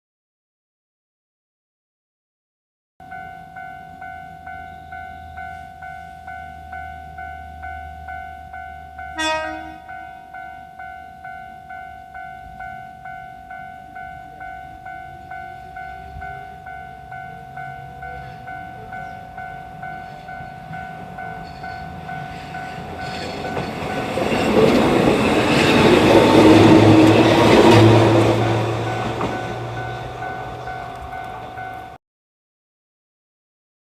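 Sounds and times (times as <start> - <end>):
electric train passing: 3.1 - 32.0
short horn blast: 9.2 - 9.9.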